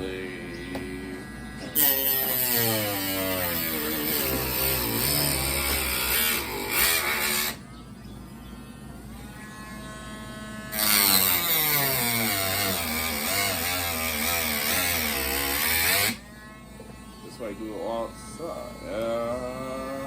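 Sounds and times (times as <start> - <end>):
rotary tool cutting plastic: 1.6 - 7.6, 10.7 - 16.3.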